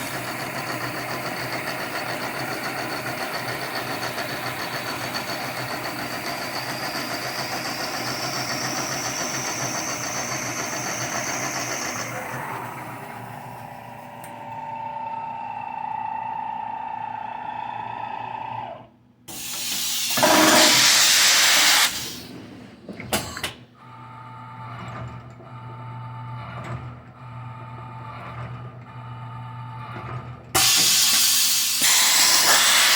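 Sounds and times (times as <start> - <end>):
milling machine whine: 0.0 - 22.3, 30.0 - 32.9.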